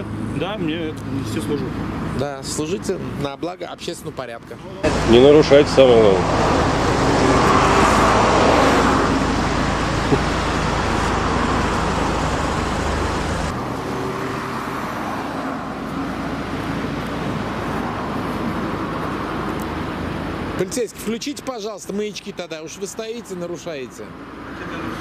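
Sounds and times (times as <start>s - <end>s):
steady traffic hum: 0.0s - 25.0s
car driving past: 4.8s - 20.1s.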